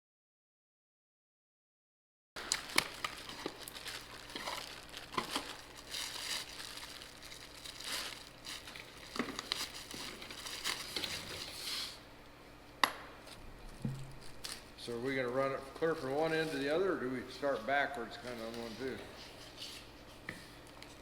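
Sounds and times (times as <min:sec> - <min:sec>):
rustling and crinkling: 0:02.4 - 0:12.0, 0:17.4 - 0:21.0
faint steady hum: 0:02.4 - 0:21.0.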